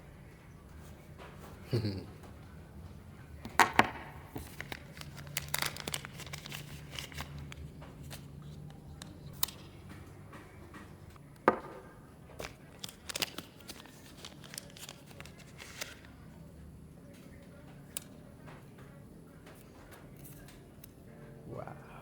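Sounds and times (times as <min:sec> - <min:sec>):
wrapping crinkling and tearing: 0:04.3 - 0:09.6, 0:12.4 - 0:16.2.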